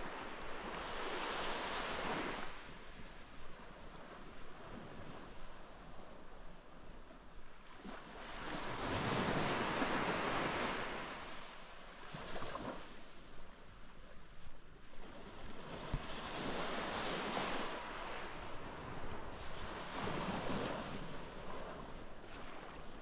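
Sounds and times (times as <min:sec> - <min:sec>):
sea waves breaking on shore: 0:00.0 - 0:23.0
wind on microphone: 0:12.1 - 0:23.0.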